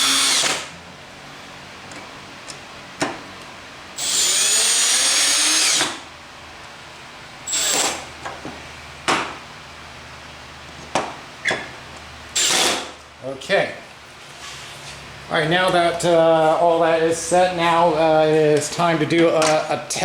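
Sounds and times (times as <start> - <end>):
cordless drill whining: 0.0 - 0.7, 4.0 - 6.0, 7.5 - 8.0, 12.4 - 12.8.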